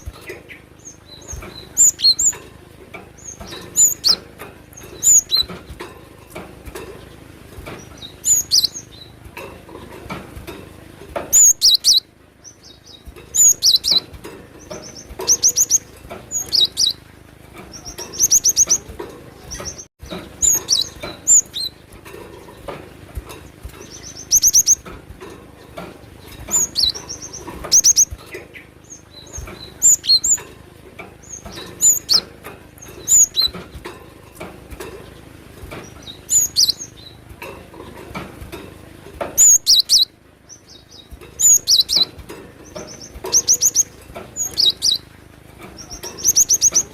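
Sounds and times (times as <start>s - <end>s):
bird singing high ringing notes: 0.0s - 2.4s, 7.9s - 9.2s, 11.3s - 17.0s, 26.2s - 30.4s, 35.9s - 37.2s.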